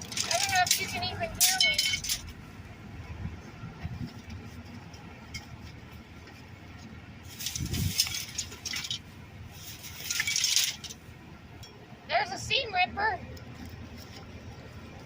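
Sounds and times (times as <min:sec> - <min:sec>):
hard items clinking and rustling: 0:00.0 - 0:02.4, 0:07.3 - 0:11.0.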